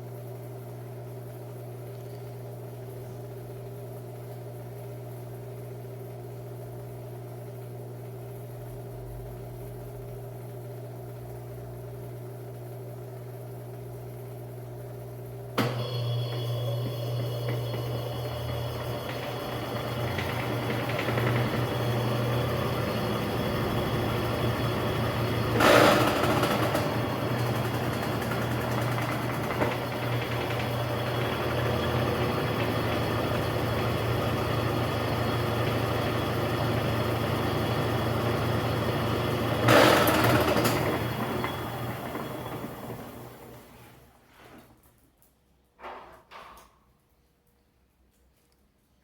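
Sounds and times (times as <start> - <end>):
washing machine spinning: 0.0 - 44.4
loud mechanical bursts: 17.8 - 32.1, 39.6 - 41.9.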